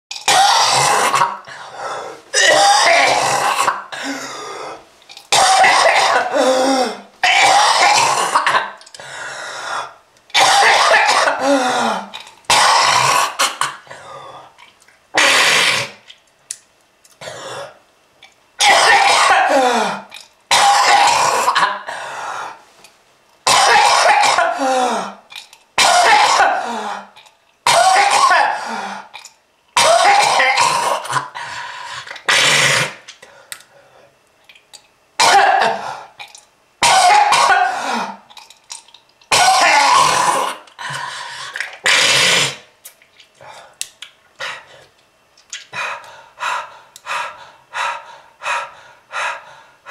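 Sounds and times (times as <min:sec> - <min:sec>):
person coughing hard: 0:00.2 - 0:01.4, 0:02.3 - 0:04.2, 0:05.3 - 0:08.8, 0:10.4 - 0:13.9, 0:15.2 - 0:16.0, 0:18.6 - 0:21.9, 0:23.4 - 0:25.2, 0:25.8 - 0:27.1, 0:27.7 - 0:28.8, 0:29.8 - 0:31.4, 0:35.2 - 0:36.1, 0:36.8 - 0:38.2, 0:39.3 - 0:40.6.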